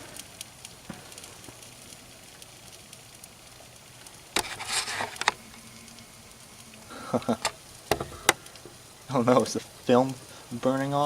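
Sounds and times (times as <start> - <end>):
small pops: 0.0 - 8.8
plastic crackling and sizzling: 0.0 - 11.0.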